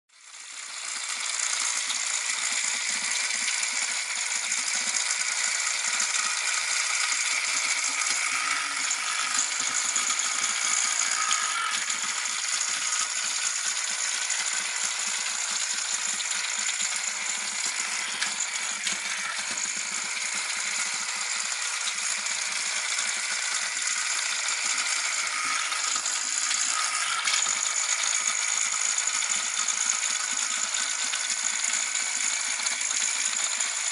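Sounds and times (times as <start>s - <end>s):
toy robot vacuum whirring: 0.1s - 33.9s.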